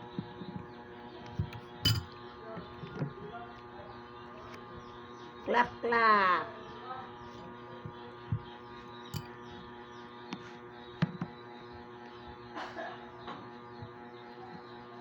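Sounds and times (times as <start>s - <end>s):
steady electrical hum: 3.3s - 10.9s.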